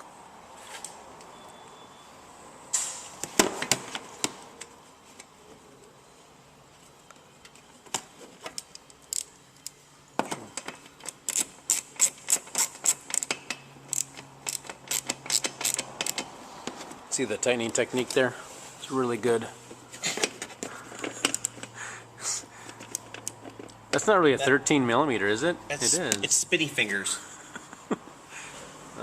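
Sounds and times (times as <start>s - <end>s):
ratchet wrench clicking: 8.6s - 9.8s, 11.0s - 16.3s.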